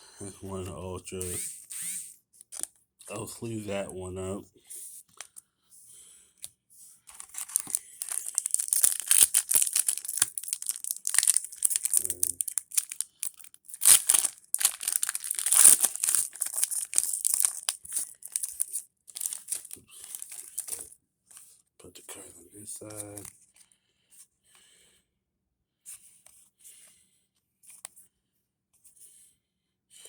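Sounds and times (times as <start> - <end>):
plastic and foil packaging crinkling: 7.1 - 20.9.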